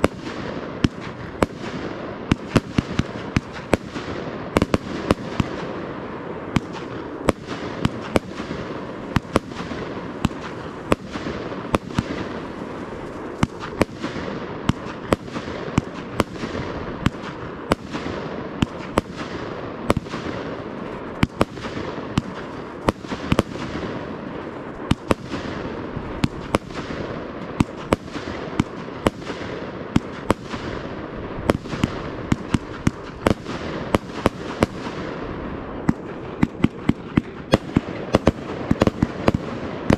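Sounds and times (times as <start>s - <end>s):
fireworks crackling: 0.0s - 39.9s
fireworks sharp bangs: 0.0s - 39.9s.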